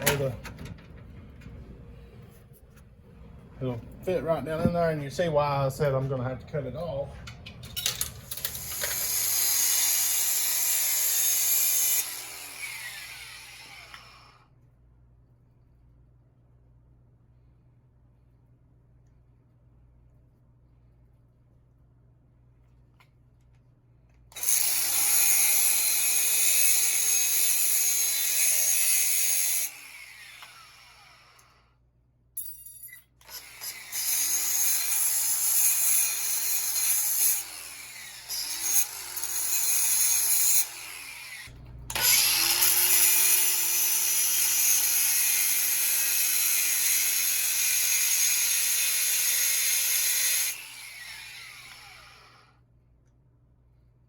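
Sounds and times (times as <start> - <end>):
angle grinder cutting metal: 8.4 - 14.4, 24.4 - 31.6, 33.2 - 52.5.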